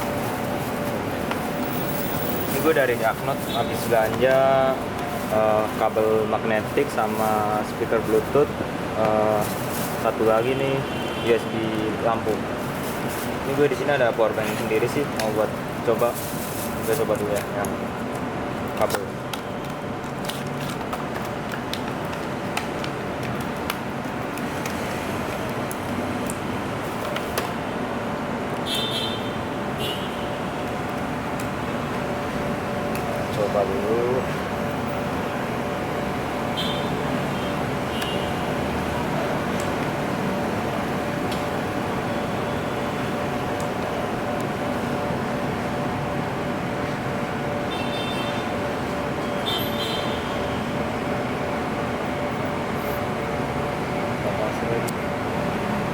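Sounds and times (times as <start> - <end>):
steady background hum: 0.0 - 55.9
packaging clicks and crackles: 12.6 - 27.6.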